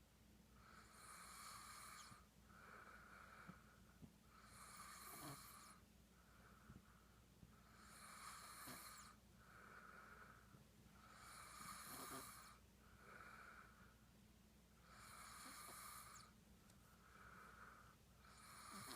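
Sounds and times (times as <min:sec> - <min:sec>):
man snoring: 0:00.9 - 0:02.2, 0:04.5 - 0:05.8, 0:07.8 - 0:09.1, 0:11.1 - 0:12.6, 0:14.9 - 0:16.3, 0:18.2 - 0:18.9.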